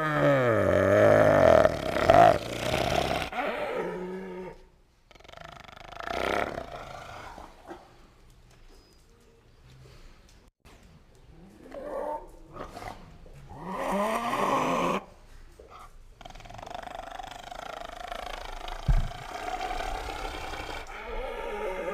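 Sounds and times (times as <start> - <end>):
kangaroo growling: 0.0 - 7.8, 11.3 - 15.1, 15.8 - 21.9
thump: 18.8 - 19.3.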